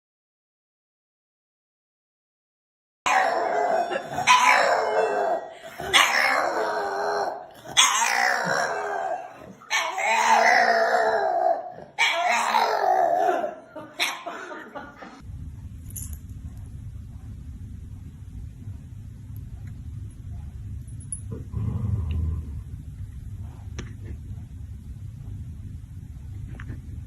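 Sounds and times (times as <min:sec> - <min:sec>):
dog howling: 0:03.1 - 0:13.6
low steady hum: 0:14.6 - 0:27.0.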